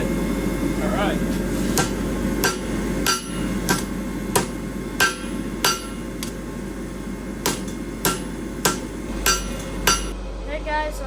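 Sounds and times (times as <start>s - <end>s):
hammer striking steel bar: 1.8s - 6.4s, 7.4s - 10.2s.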